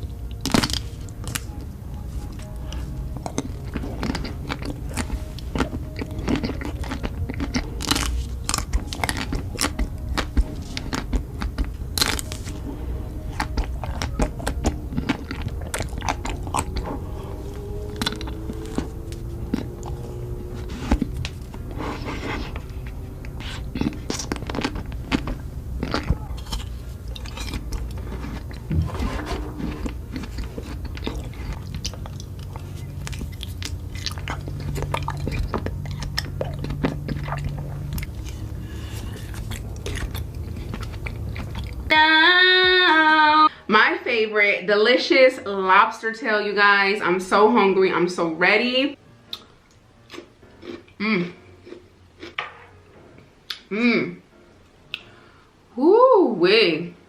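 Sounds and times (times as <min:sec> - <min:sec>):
crunching and chewing crisp food: 0:00.0 - 0:41.9, 0:49.3 - 0:52.4.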